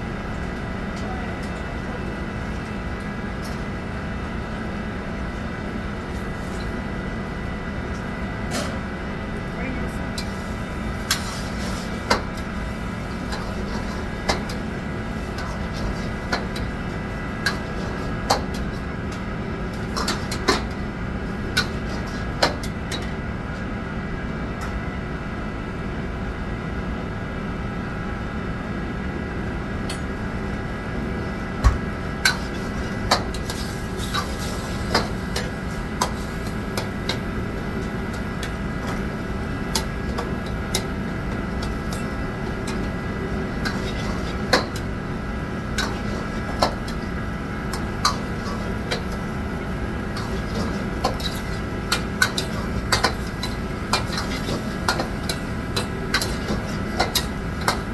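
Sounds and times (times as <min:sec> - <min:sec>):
steady machine drone: 0:00.0 - 0:57.9
pans and utensils clinking: 0:43.6 - 0:44.9, 0:45.8 - 0:47.1, 0:47.7 - 0:49.3, 0:50.1 - 0:57.9.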